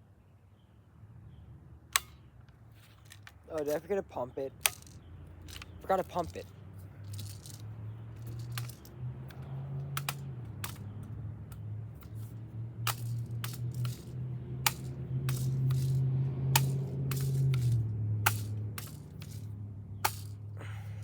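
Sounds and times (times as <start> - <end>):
bb gun pumping clicks: 4.6 - 6.4, 8.2 - 19.4.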